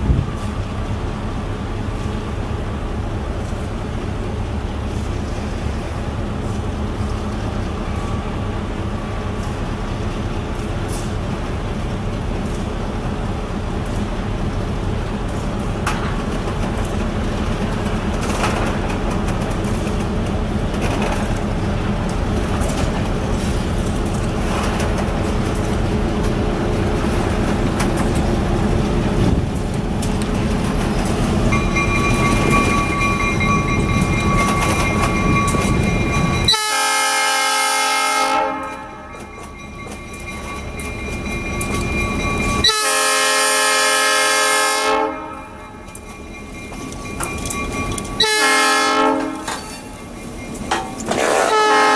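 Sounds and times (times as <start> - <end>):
diesel locomotive rumbling past: 0.0 - 51.9
locomotive air horn blasts: 36.5 - 39.1, 42.6 - 45.6, 48.2 - 49.5, 51.2 - 51.9.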